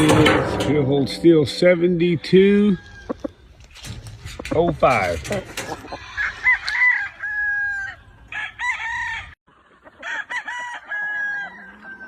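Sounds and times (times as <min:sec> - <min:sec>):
roosters crowing: 0:01.7 - 0:03.6, 0:05.5 - 0:12.0.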